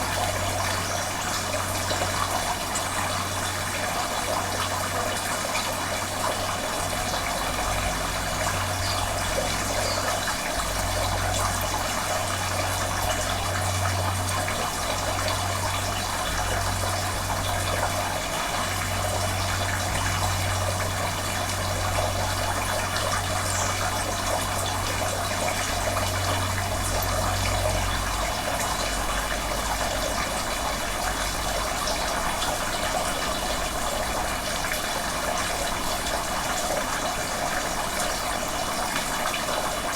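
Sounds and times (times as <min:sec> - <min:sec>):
running water: 0:00.0 - 0:39.9
deep low hum: 0:06.8 - 0:34.4.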